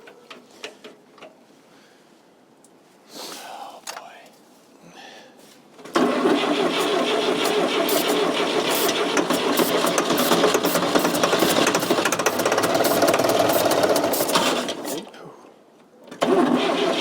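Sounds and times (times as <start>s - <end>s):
diesel engine starting and clattering: 5.9s - 15.1s, 16.2s - 17.0s.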